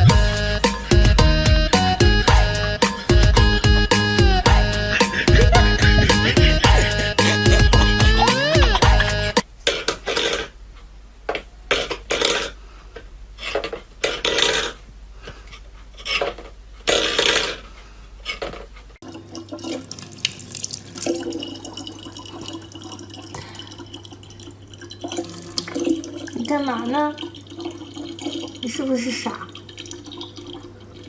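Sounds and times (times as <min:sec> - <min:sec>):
steady hum: 0:00.0 - 0:09.5
water splashing: 0:19.0 - 0:31.0.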